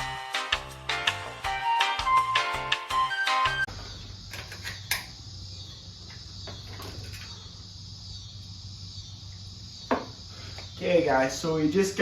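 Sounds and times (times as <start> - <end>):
steady low hum with hiss: 3.7 - 12.0.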